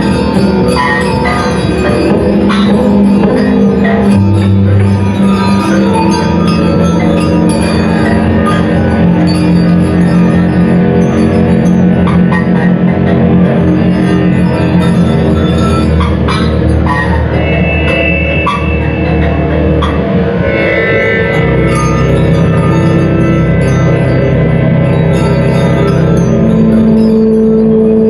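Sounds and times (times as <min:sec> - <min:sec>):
deep low note: 0:16.8 - 0:25.2.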